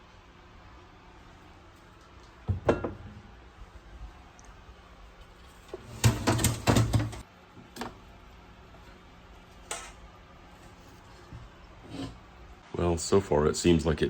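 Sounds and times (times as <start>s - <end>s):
knocks and rattles: 5.8s - 7.2s.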